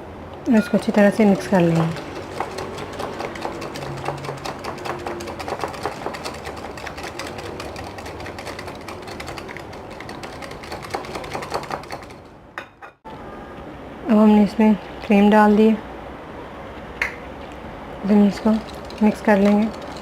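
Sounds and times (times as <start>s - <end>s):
utensil clicking against bowl: 0.7s - 12.2s.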